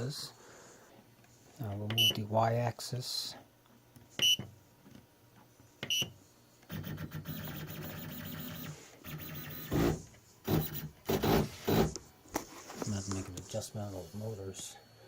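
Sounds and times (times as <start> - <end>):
stepper motor running: 6.7 - 12.0.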